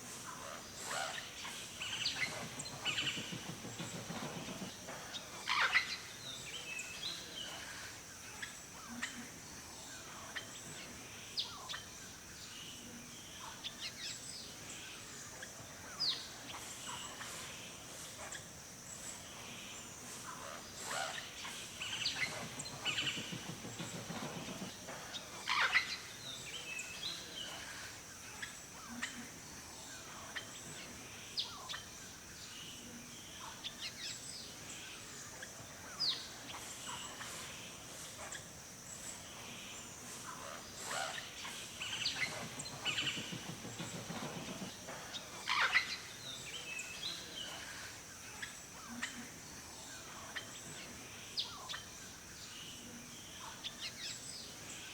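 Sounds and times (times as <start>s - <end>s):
steady high hiss: 0.0s - 54.9s
birds chirping and calling: 19.1s - 31.9s, 35.8s - 51.9s.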